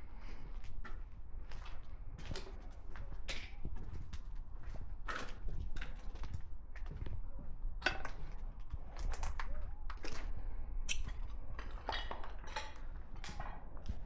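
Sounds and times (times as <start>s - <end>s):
footsteps crunching over debris: 0.4s - 8.8s.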